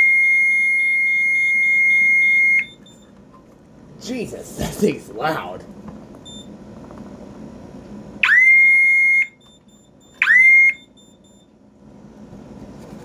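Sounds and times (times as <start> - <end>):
alarm siren blasts: 0.0 - 2.8, 8.2 - 9.4, 10.2 - 11.0.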